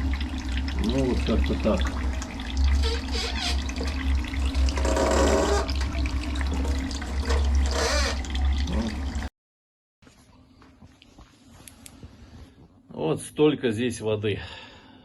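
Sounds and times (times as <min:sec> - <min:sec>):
low steady hum: 0:00.0 - 0:09.3
water splashing from a hose: 0:00.0 - 0:09.3.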